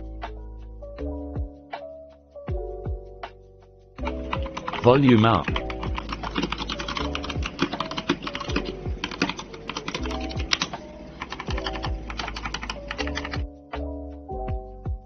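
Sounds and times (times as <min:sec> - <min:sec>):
background music: 0:00.0 - 0:15.0
mechanical keyboard typing: 0:04.0 - 0:13.4.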